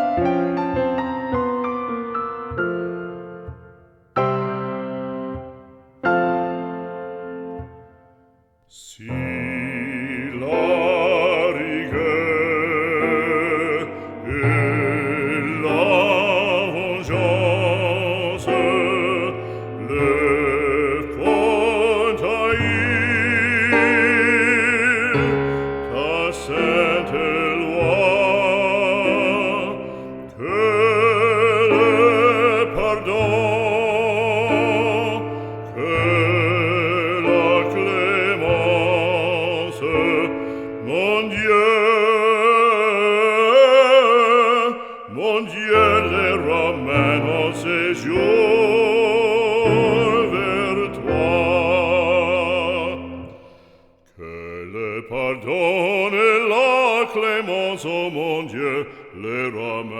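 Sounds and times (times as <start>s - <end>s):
operatic voice singing: 8.7s - 59.9s.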